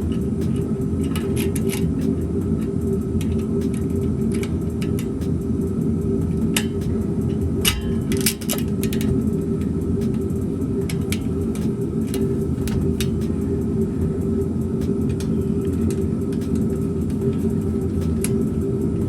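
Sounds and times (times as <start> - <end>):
low mechanical hum: 0.0 - 19.0.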